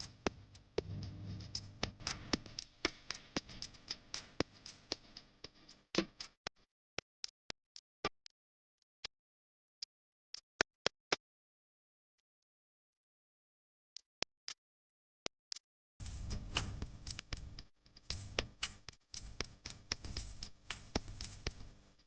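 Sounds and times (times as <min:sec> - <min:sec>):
faint low hum: 0:00.0 - 0:02.6, 0:16.0 - 0:18.6.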